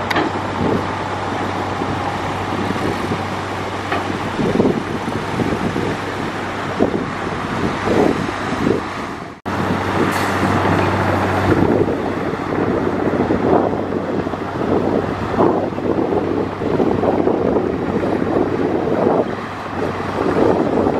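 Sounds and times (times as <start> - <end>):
heavy diesel machinery running: 0.0 - 20.9
wind on microphone: 0.0 - 20.9.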